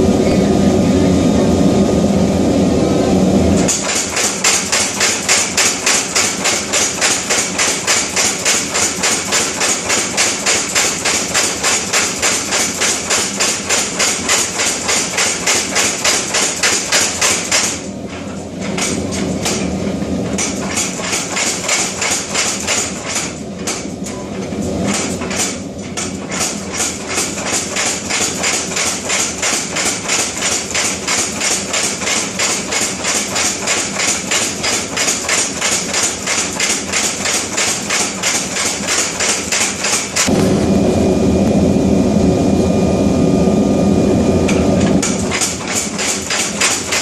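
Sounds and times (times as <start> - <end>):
loud steady roar: 0.0 - 14.4, 40.1 - 47.0
power hammer striking steel: 3.6 - 24.0, 24.9 - 40.5, 44.5 - 47.0.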